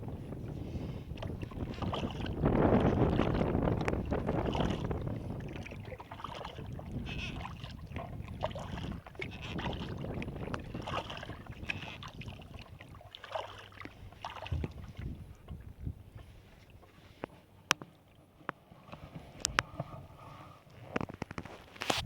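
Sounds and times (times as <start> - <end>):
wind rumble on microphone: 0.0 - 13.1, 13.8 - 16.8
kayak paddle splashing water: 0.4 - 20.4
water dripping off paddle: 1.1 - 15.6.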